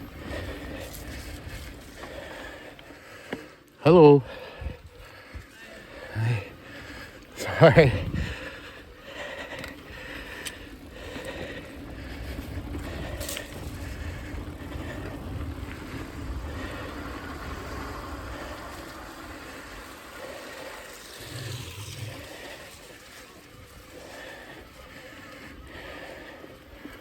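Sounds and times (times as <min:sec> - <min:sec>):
bike tyres crunching on dirt: 0:00.0 - 0:03.6, 0:04.5 - 0:27.0
bike clicks: 0:08.4 - 0:27.0.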